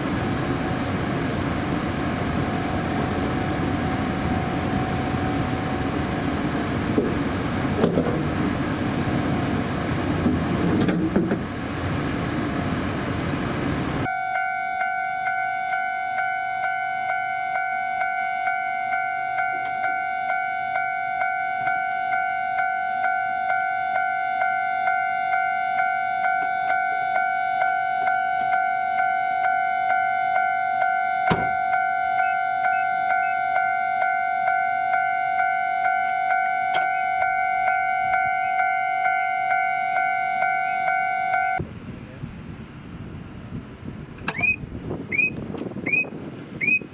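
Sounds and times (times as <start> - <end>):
level crossing bell clanging: 14.1 - 41.6.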